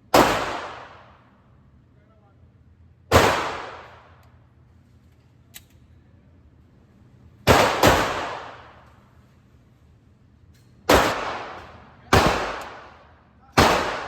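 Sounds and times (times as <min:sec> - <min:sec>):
handgun shots with indoor echo: 0:00.1 - 0:01.4, 0:03.1 - 0:04.4, 0:07.4 - 0:09.0, 0:10.5 - 0:14.0.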